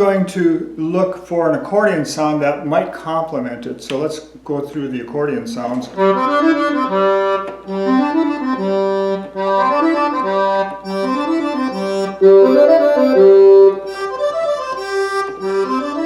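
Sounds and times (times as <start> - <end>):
accordion playing a phrase: 5.5 - 16.0.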